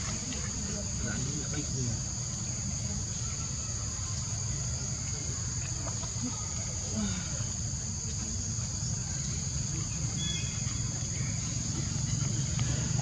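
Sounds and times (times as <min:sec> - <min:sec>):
insects droning: 0:00.0 - 0:13.0.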